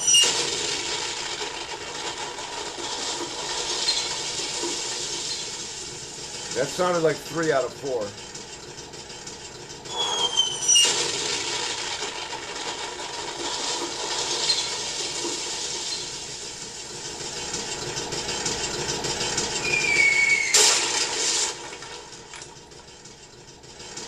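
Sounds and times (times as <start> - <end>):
falling whistle: 0.0 - 0.5, 9.9 - 11.0, 19.6 - 20.8
loud burst: 0.0 - 8.1, 9.9 - 22.4
noisy rumbling clatter: 0.0 - 24.0.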